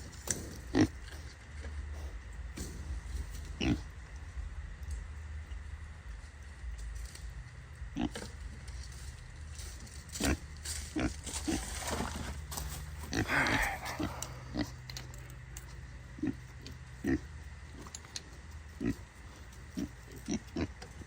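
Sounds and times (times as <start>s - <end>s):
pig grunting: 0.0s - 4.0s, 7.9s - 8.3s, 10.2s - 11.7s, 13.0s - 15.1s, 16.2s - 17.3s, 18.8s - 20.8s.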